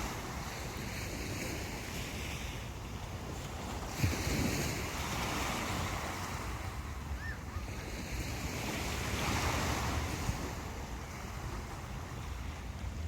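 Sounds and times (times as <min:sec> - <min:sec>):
waves breaking on beach: 0:00.0 - 0:13.0
wind rumble on microphone: 0:00.0 - 0:13.0.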